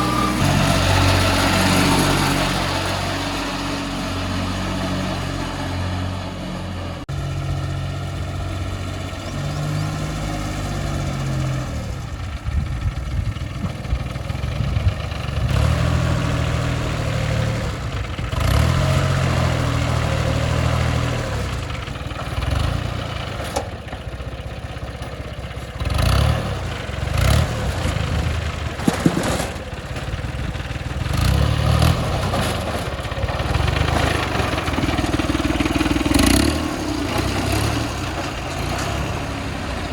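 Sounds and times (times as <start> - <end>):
engine revving: 0.0 - 23.9, 25.7 - 39.9.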